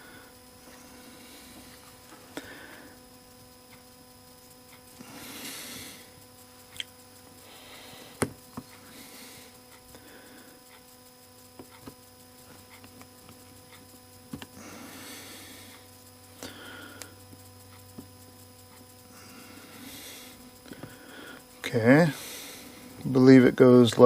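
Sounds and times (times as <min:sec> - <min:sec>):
faint steady hum: 0:00.0 - 0:24.0
parts clicking and tapping: 0:10.7 - 0:14.6.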